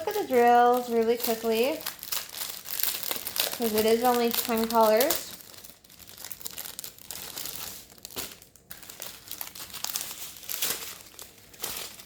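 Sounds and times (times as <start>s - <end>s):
plastic bags crinkling: 0.0s - 12.0s.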